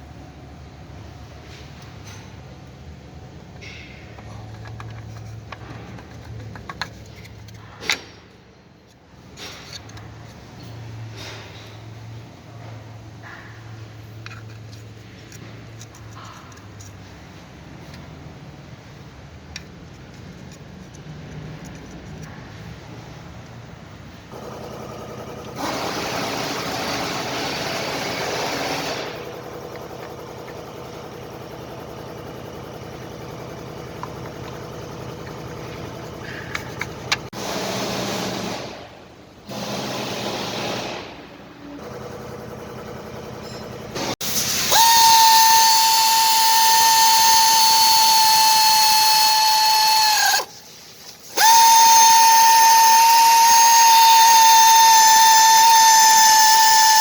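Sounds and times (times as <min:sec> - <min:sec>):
power tool whining: 0:41.8 - 0:50.6, 0:51.2 - 0:57.0
hissing bursts: 0:44.2 - 0:57.0.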